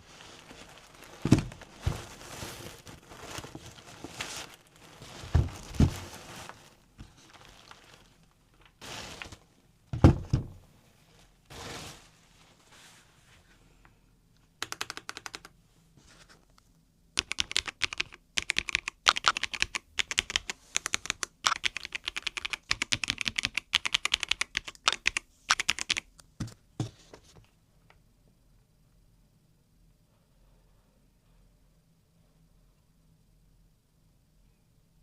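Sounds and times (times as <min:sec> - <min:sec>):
mechanical keyboard typing: 0:14.6 - 0:15.6, 0:17.2 - 0:26.1.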